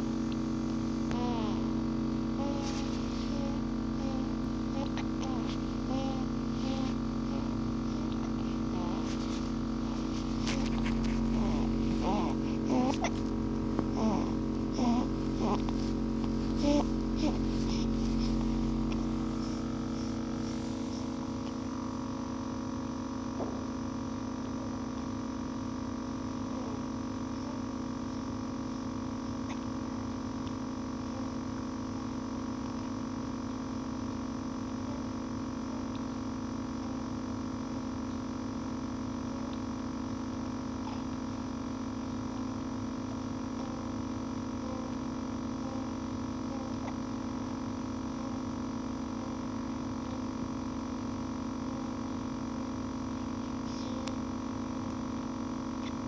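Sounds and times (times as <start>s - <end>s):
electrical hum: 0.0s - 56.0s
person hiccuping: 1.1s - 1.7s, 11.4s - 13.2s, 13.9s - 15.7s.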